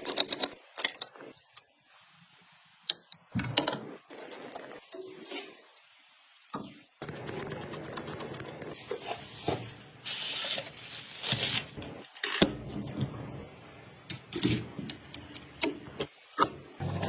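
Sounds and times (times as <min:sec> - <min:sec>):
computer parts clicking and tapping: 0:00.0 - 0:01.2.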